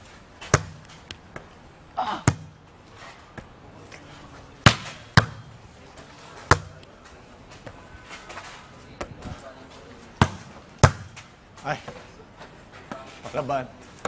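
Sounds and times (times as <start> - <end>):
volleyball being hit: 0.4 - 2.6, 4.6 - 5.7, 6.4 - 6.8, 10.2 - 11.3.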